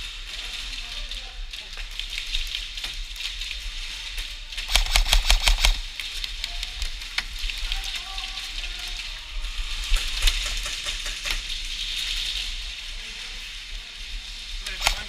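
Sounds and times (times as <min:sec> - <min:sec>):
steady background noise: 0:00.0 - 0:15.0
airsoft gun firing: 0:04.7 - 0:05.8, 0:14.8 - 0:15.0.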